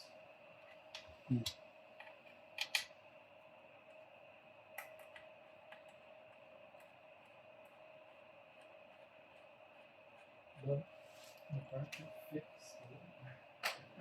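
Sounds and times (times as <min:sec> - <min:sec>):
faint steady whine: 0:00.0 - 0:14.0
clicks and taps of computer parts: 0:02.0 - 0:02.9, 0:04.8 - 0:06.0.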